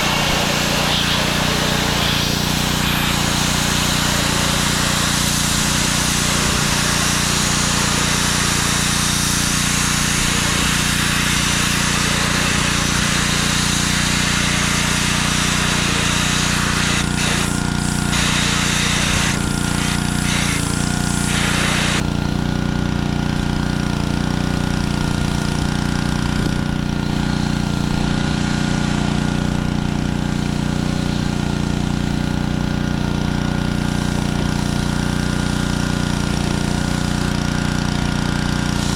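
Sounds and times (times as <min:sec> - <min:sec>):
high-pressure water spray hissing: 0:00.0 - 0:22.0
pressure washer engine running: 0:00.0 - 0:38.9.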